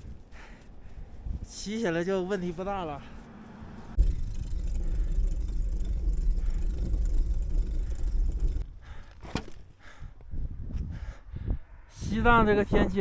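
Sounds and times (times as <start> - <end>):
wind rumbling on microphone: 0.0 - 1.6, 3.9 - 9.0, 9.8 - 13.0.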